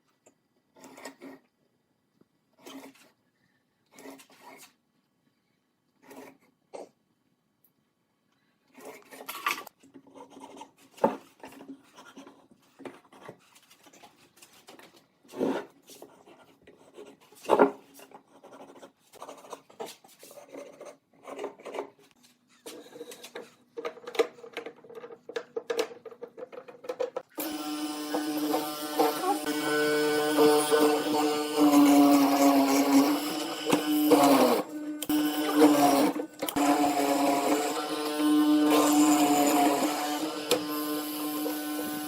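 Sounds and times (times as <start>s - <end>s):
scraping and rasping on wood: 27.2s - 42.0s
power tool whine: 27.4s - 42.0s.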